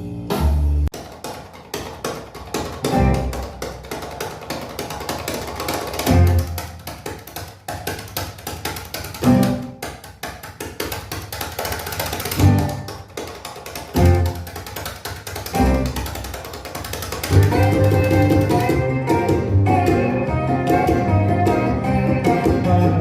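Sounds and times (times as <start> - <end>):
deep bass notes: 0.0 - 0.9, 17.4 - 23.0
instrumental music through speakers: 0.0 - 14.8, 15.4 - 23.0.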